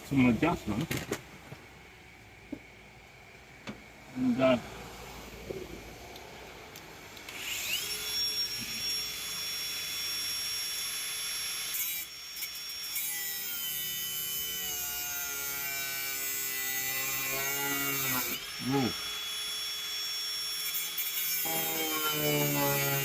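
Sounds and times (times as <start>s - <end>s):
power tool whining: 7.0s - 15.0s, 16.2s - 23.0s.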